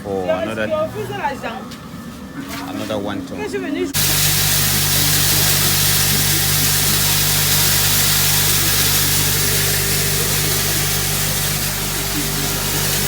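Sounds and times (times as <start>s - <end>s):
feed mixing machine running: 4.0s - 13.0s.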